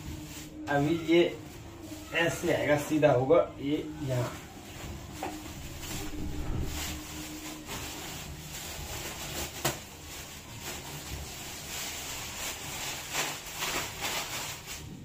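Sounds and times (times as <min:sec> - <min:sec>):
packaging rustling: 0:04.0 - 0:15.0.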